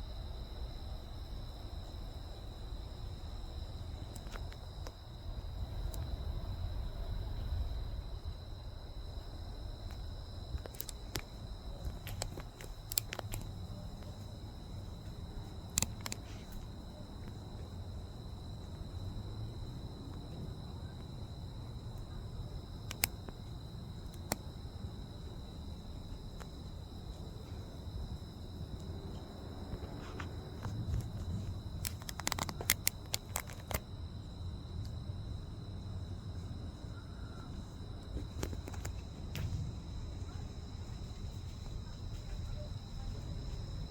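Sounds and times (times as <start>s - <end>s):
insects trilling: 0.0s - 43.9s
low background noise: 0.0s - 43.9s
sharp clicks: 10.6s - 14.1s, 15.7s - 16.6s, 22.9s - 23.4s, 30.6s - 33.8s.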